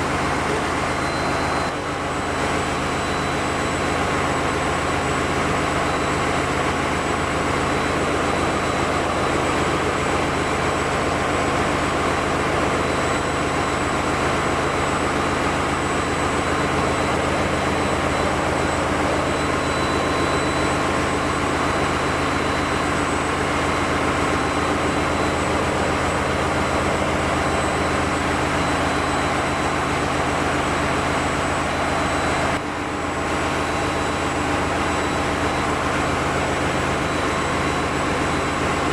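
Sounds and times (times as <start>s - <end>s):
diesel generator engines running: 0.0s - 38.9s.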